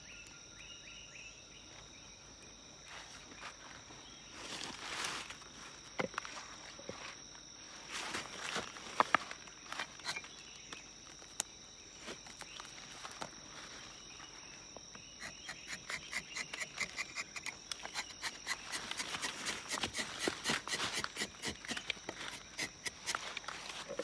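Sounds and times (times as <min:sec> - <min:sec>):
high-pitched insect drone: 0:12.0 - 0:24.0.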